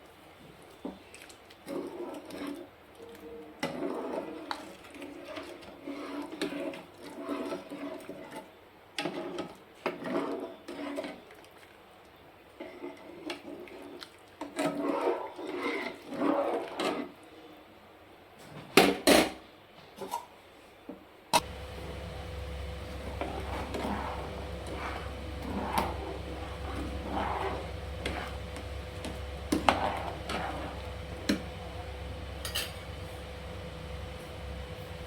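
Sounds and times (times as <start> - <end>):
utensils scraping a metal pot: 3.6 - 11.2, 22.3 - 31.6, 32.4 - 33.0.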